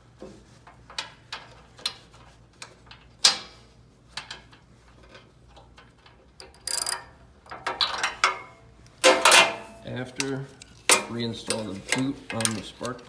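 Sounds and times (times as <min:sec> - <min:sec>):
metal rattle: 0:05.8 - 0:13.0.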